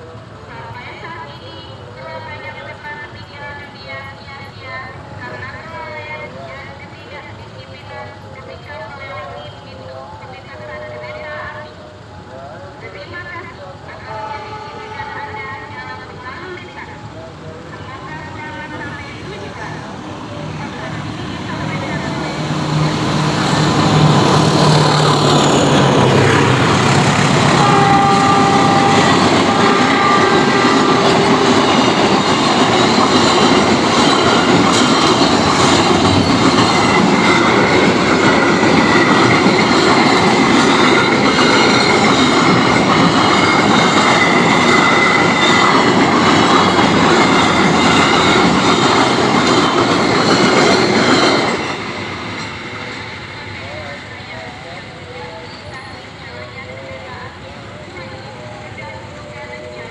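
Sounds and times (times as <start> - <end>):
locomotive humming: 0.0 - 59.9
train wagons rumbling on rails: 0.0 - 59.9
high wheel squeal: 14.1 - 59.9.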